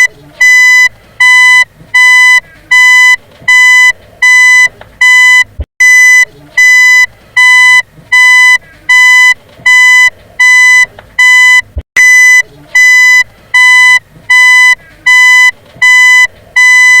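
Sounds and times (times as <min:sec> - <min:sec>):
vehicle reversing beeper: 0:00.0 - 0:17.0.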